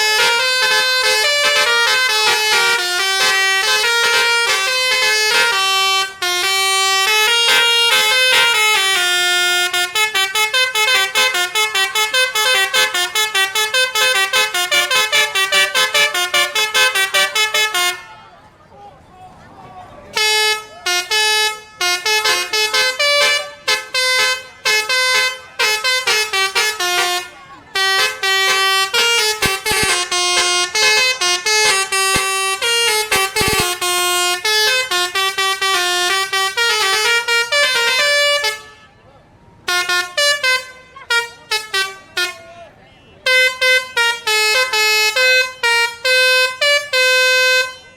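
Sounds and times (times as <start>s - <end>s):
musical bus horn playing a tune: 0.0s - 18.3s, 20.1s - 47.9s.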